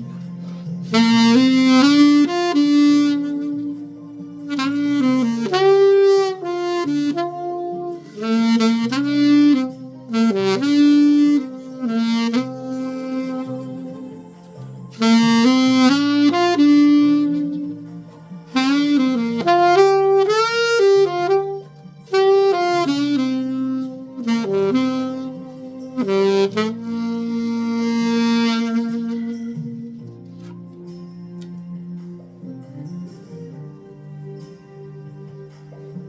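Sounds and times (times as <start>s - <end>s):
saxophone playing slow melody: 0.0s - 36.0s
soft musical accompaniment: 0.0s - 36.0s.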